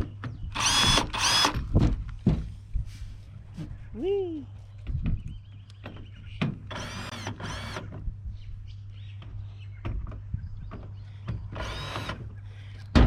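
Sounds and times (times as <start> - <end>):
cordless drill whining: 0.5 - 1.6, 6.7 - 7.9, 11.6 - 12.2.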